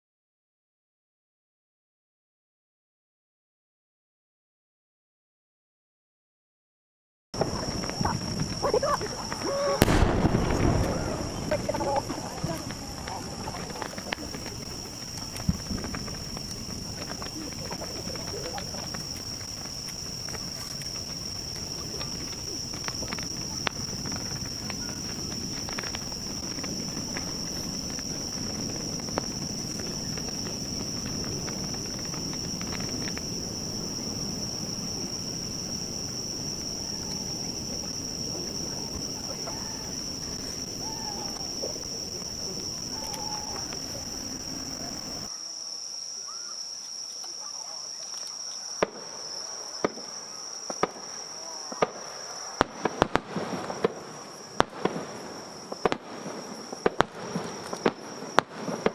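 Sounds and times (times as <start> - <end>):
crowd murmur: 7.4 - 45.3
fireworks popping and banging: 7.4 - 45.3, 49.8 - 58.9
insects trilling: 7.4 - 58.9.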